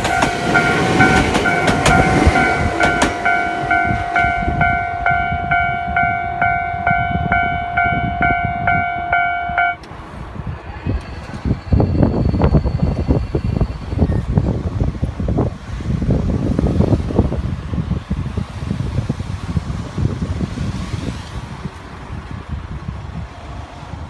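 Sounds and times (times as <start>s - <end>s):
train wheels clacking over rail joints: 0.0s - 4.3s
level crossing bell ringing: 0.0s - 9.8s.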